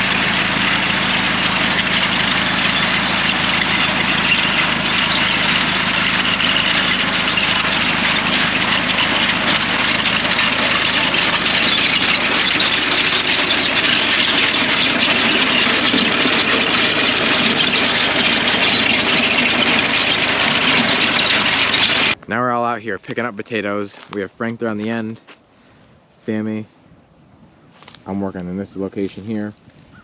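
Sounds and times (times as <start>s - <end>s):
dense clattering: 0.0s - 22.2s
tractor engine running: 0.0s - 22.2s.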